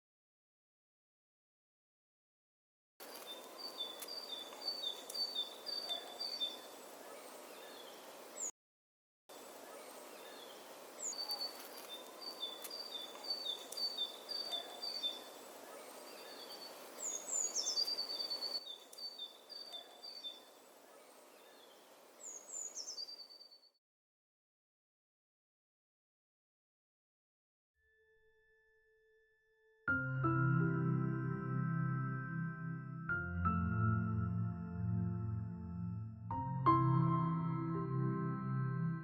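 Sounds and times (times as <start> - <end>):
songbirds chirping: 3.0 - 8.5, 9.3 - 23.8.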